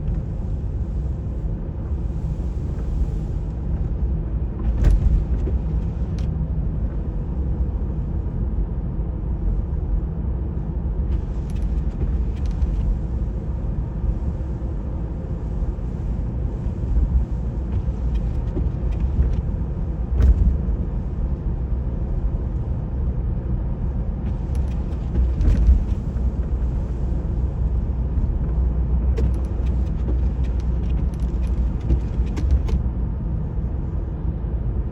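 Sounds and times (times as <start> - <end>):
car road noise rumble: 0.0 - 34.9
sharp clicks and knocks: 28.4 - 32.9.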